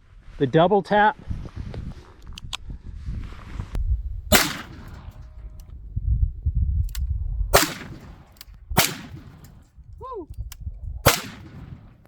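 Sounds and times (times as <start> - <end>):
revolver gunshots: 4.3 - 5.3, 7.6 - 9.6, 11.1 - 12.0.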